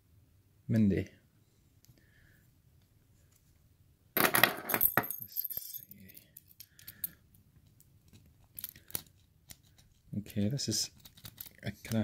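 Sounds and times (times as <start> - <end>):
padlock and keys clicking: 7.7 - 10.0, 11.0 - 12.0.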